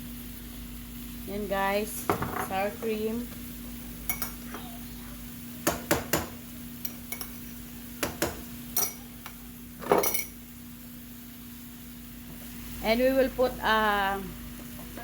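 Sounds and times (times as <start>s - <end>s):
metal spoon clinking against pan: 4.1s - 4.4s, 8.2s - 9.0s.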